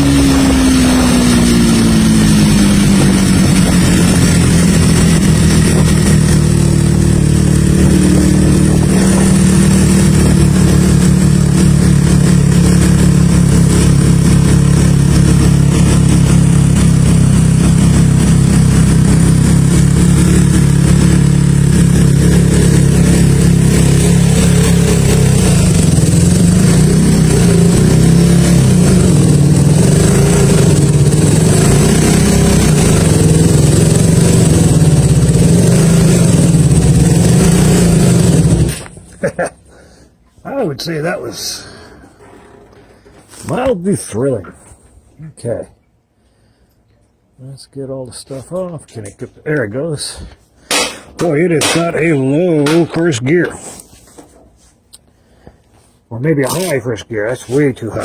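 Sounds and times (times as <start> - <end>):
motorcycle engine running: 0.0 - 39.5, 50.7 - 53.1.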